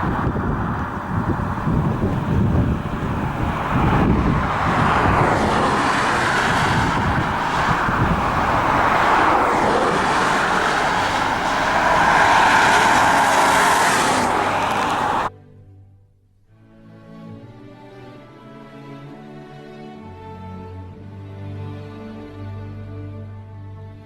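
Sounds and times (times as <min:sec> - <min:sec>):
air rushing past microphone: 0:00.0 - 0:15.3
car road and engine noise: 0:00.0 - 0:15.3.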